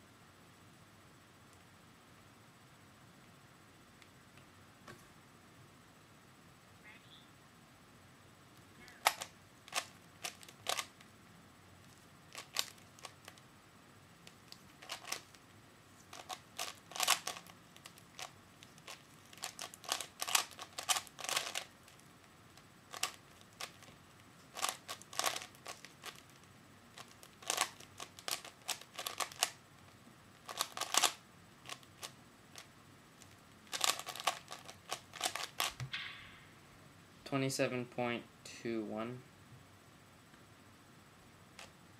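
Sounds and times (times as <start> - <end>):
plastic puzzle cube turning clicks: 12.3 - 13.4, 16.1 - 21.7, 24.6 - 26.2, 27.0 - 29.6, 30.4 - 35.8.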